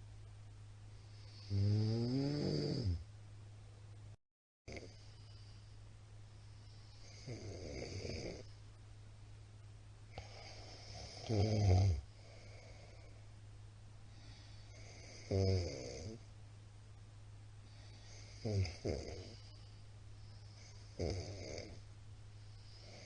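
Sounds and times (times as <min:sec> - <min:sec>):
steady low hum: 0:00.0 - 0:23.0
man snoring: 0:01.2 - 0:03.0, 0:04.7 - 0:05.0, 0:07.0 - 0:08.5, 0:10.2 - 0:13.1, 0:14.3 - 0:16.2, 0:17.8 - 0:19.5, 0:20.5 - 0:21.8, 0:22.6 - 0:23.0.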